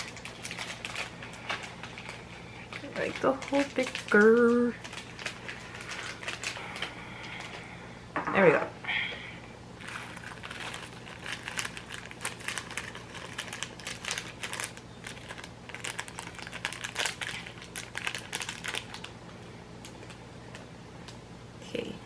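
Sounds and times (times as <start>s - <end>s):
plastic packet crinkling: 0.0s - 7.6s, 9.8s - 19.2s, 19.8s - 20.6s.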